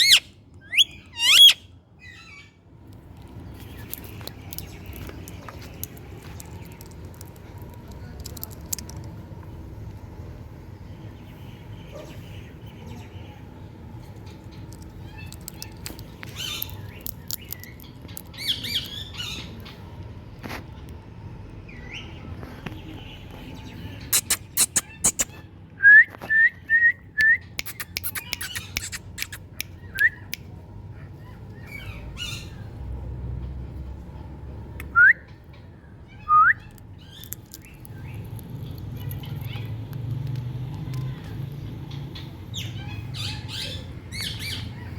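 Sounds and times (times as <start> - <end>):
parakeet sharp calls: 0.0 - 2.4, 24.1 - 25.5, 27.7 - 29.5
parakeet soft chatter: 23.9 - 25.4, 27.6 - 29.6.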